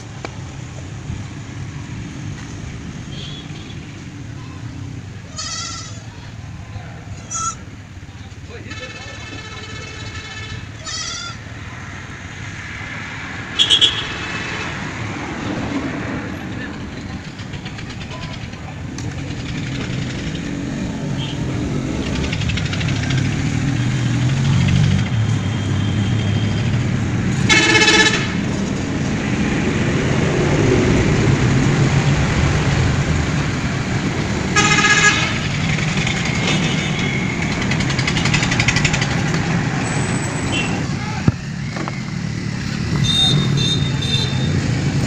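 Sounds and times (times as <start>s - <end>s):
road traffic noise: 0.0s - 45.0s
vehicle horn honking: 3.1s - 3.8s, 13.6s - 14.3s, 27.4s - 28.5s, 34.6s - 35.5s, 40.5s - 40.8s, 43.0s - 44.6s.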